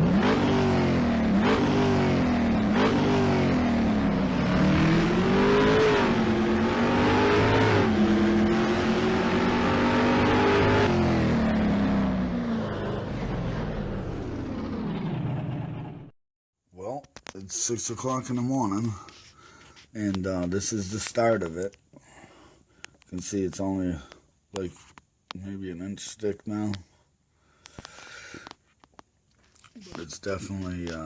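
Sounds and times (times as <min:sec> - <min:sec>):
car engine accelerating hard: 0:00.0 - 0:16.1.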